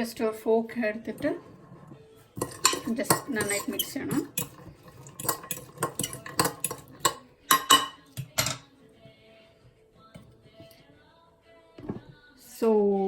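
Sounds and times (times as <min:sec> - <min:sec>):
spoon clinking against glass bowl: 0:02.4 - 0:08.7.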